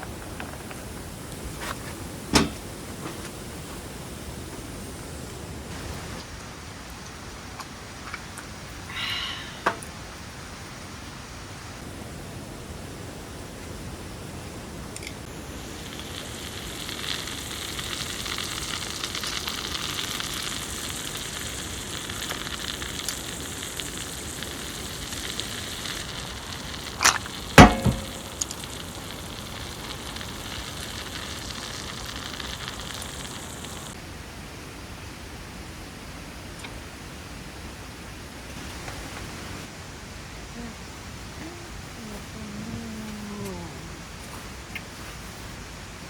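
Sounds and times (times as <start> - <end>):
food sizzling in a pan: 12.9 - 34.0
loud utensil clack: 27.6 - 28.6.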